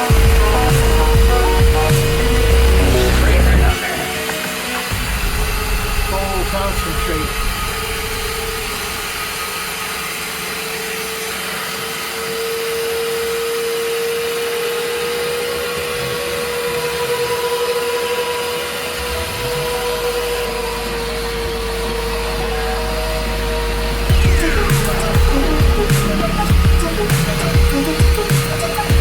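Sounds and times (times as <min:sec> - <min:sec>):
deep hum: 0:00.0 - 0:04.2, 0:04.9 - 0:10.0, 0:19.0 - 0:29.0
carpet cleaning machine motor whine: 0:00.0 - 0:29.0.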